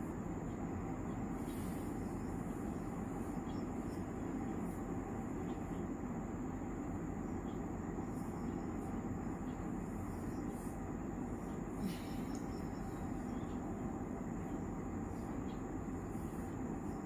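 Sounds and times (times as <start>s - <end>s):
faint high-pitched whine: 0.0s - 17.0s.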